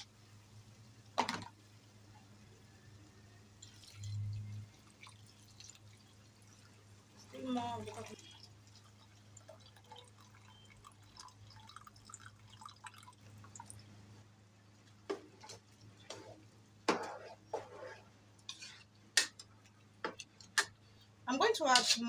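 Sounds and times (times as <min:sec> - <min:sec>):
liquid pouring and dripping into pot: 0:03.6 - 0:13.9.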